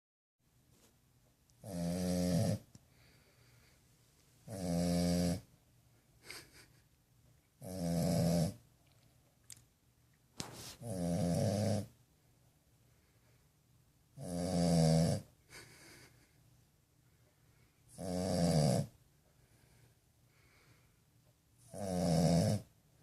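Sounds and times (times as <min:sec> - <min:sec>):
puppy snoring: 0:01.6 - 0:03.7, 0:04.4 - 0:05.5, 0:07.6 - 0:08.6, 0:10.4 - 0:12.0, 0:14.2 - 0:16.3, 0:17.9 - 0:19.0, 0:21.6 - 0:22.7
small snuffles: 0:10.4 - 0:11.0.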